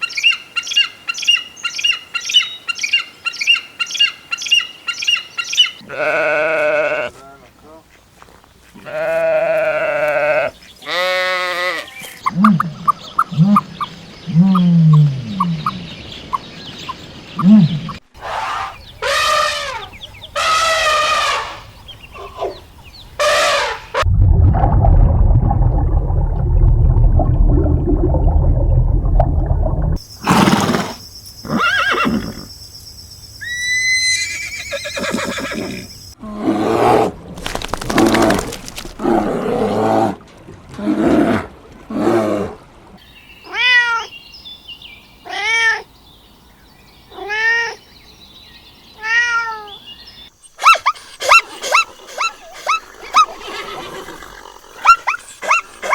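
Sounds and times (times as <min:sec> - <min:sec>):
drawn-out animal cries: 0:33.4 - 0:36.0
cat meows: 0:49.0 - 0:49.7.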